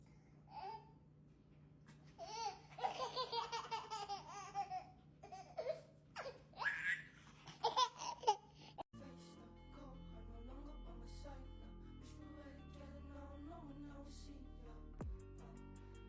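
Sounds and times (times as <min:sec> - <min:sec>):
baby laughing: 0:02.2 - 0:08.6.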